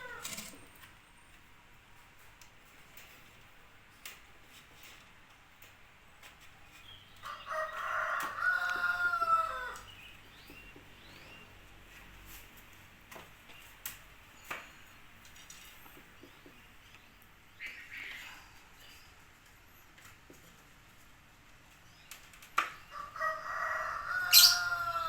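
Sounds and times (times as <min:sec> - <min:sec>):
rooster crowing: 0:00.0 - 0:00.4, 0:07.2 - 0:09.9, 0:22.9 - 0:25.0.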